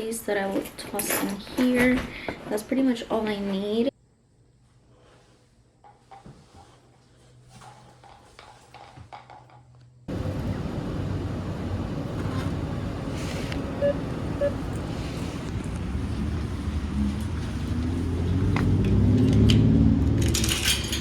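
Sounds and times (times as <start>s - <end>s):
road noise inside moving car: 10.1s - 20.2s
short beeps: 13.8s - 14.6s.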